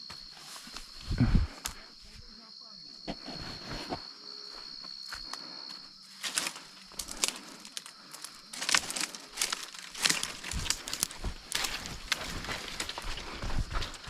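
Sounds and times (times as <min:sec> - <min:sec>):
footsteps crunching through leaves: 0:08.5 - 0:14.0.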